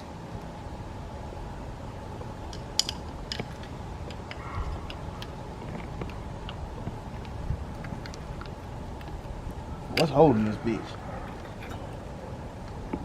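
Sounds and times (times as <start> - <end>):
outdoor background rush: 0.0 - 13.0.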